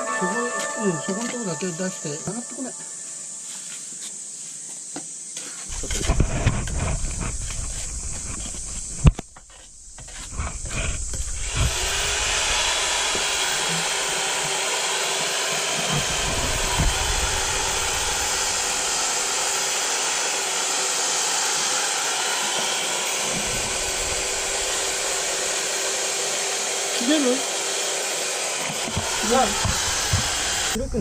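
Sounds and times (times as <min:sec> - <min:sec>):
steady machine hiss: 0:01.2 - 0:27.4, 0:28.3 - 0:31.0
faint hum: 0:16.0 - 0:19.5.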